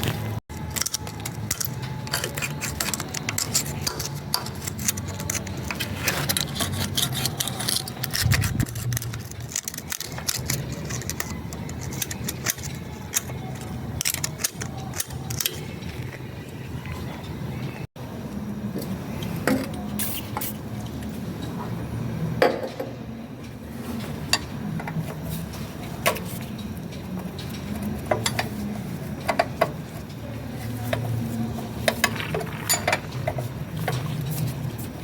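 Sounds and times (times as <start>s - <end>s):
metal tools clinking: 32.0s - 34.0s.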